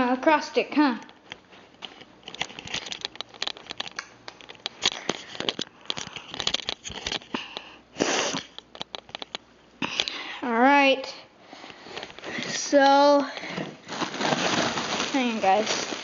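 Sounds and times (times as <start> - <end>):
clicking and rustling handling noise: 1.0 - 7.7, 8.4 - 10.2.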